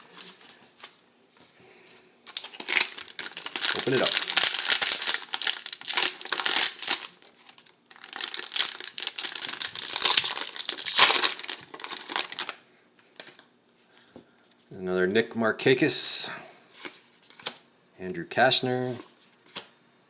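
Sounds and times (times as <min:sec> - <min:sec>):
wrapper crinkling: 0:02.3 - 0:12.6.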